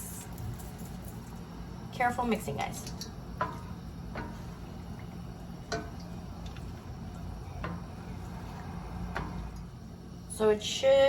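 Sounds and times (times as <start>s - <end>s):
steady low hum: 0.0s - 11.0s
utensil stirring sauce in pan: 2.8s - 9.8s.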